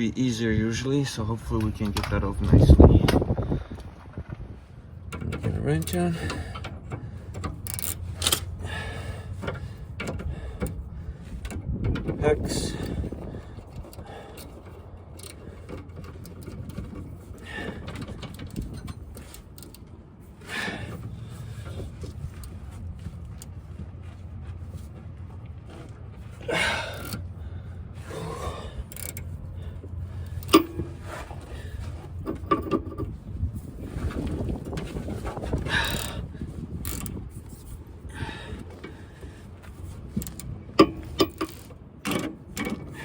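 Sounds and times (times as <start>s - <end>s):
steady low hum: 0.0s - 43.0s
wrench clinking on metal: 30.2s - 31.4s, 40.2s - 42.9s.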